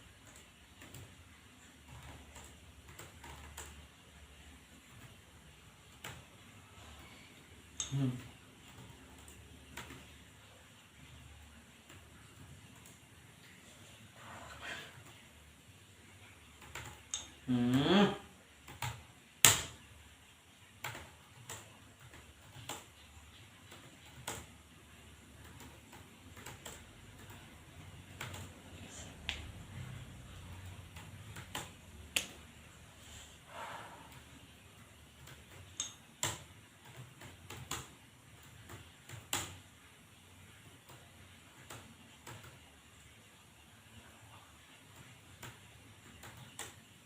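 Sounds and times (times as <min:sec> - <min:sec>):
keyboard keys clicking: 0:23.7 - 0:24.5, 0:25.4 - 0:28.6, 0:30.5 - 0:32.5, 0:35.1 - 0:39.6.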